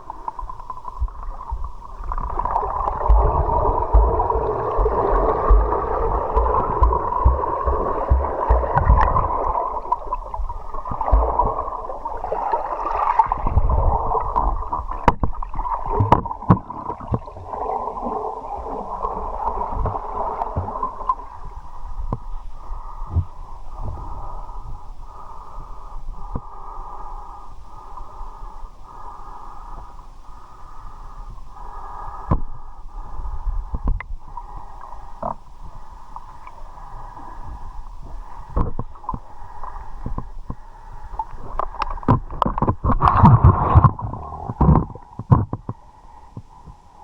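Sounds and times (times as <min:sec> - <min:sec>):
river water gurgling and rushing: 0:00.0 - 0:21.4
low thumps: 0:01.0 - 0:11.9.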